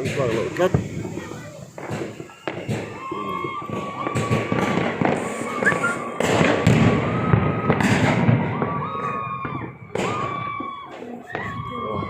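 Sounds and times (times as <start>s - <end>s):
fireworks booms and crackles: 0.0s - 12.0s
high whistling tone: 5.1s - 6.2s.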